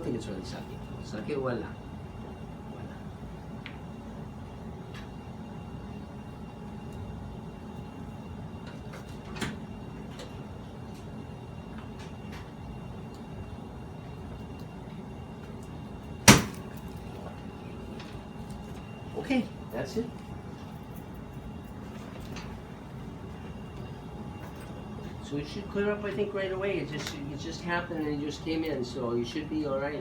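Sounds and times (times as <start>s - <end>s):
room hum: 0.0s - 30.0s
loud sharp knock: 16.3s - 16.6s.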